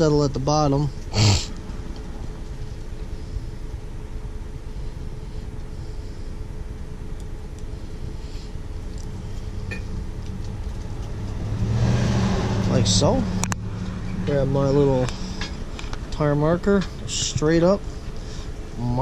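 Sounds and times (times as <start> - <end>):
faint steady hum: 0.0 - 11.7, 12.8 - 19.0
low background rumble: 0.0 - 11.8.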